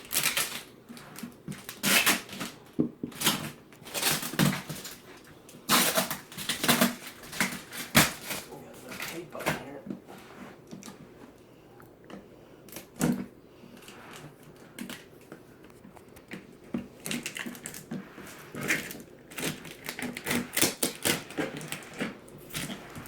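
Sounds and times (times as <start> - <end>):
packing tape peeling crackle: 0.0 - 9.7, 17.0 - 23.0.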